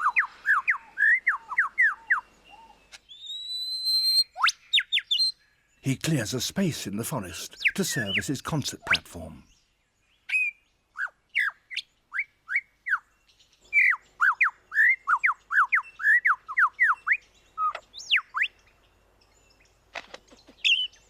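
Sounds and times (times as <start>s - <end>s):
lyrebird whistled song: 0.0s - 5.4s.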